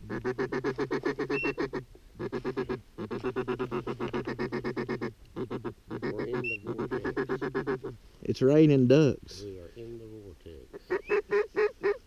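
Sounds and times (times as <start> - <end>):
ducks feeding chuckle: 0.0 - 8.0, 10.6 - 12.0.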